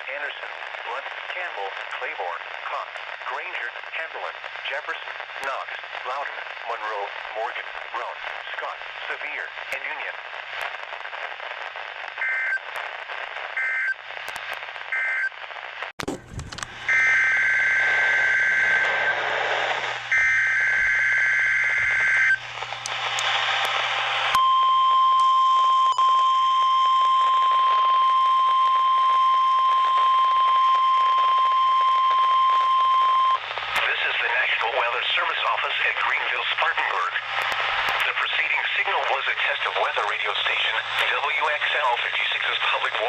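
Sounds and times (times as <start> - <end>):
radio background hiss: 0.0 - 24.4, 27.0 - 43.0
steady warning alarm tone: 16.9 - 19.1.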